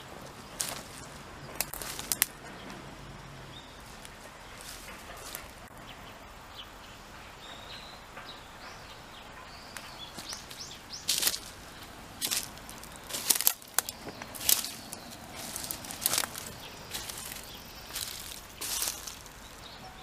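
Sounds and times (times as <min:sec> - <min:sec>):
background hiss: 0:00.0 - 0:20.0
small birds chirping: 0:00.0 - 0:20.0
sharp snaps: 0:01.6 - 0:02.4.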